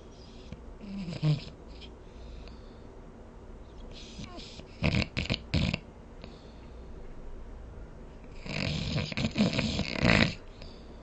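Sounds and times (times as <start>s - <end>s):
person snoring: 8.4s - 10.4s.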